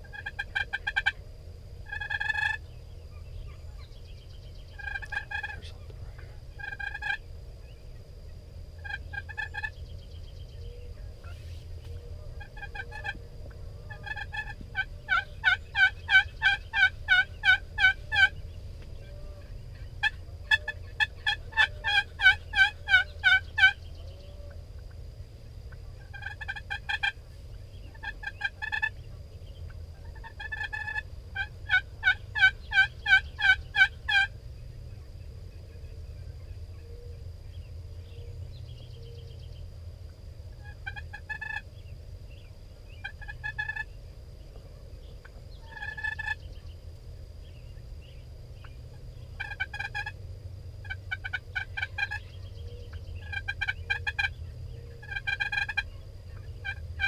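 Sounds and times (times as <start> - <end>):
turkey yelping: 0.1 - 1.2, 1.9 - 2.6, 4.8 - 5.7, 6.6 - 7.2, 8.8 - 9.8, 12.2 - 13.2, 13.8 - 18.4, 19.0 - 24.6, 26.1 - 27.2, 27.9 - 29.0, 30.0 - 34.3, 40.6 - 41.6, 43.0 - 43.9, 45.6 - 46.4, 49.4 - 50.2, 50.8 - 57.0.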